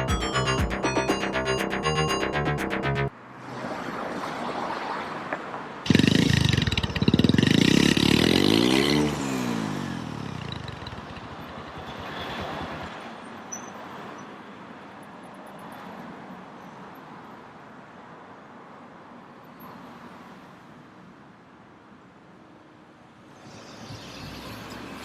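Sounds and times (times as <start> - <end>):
vehicle engine revving: 5.9 - 12.0.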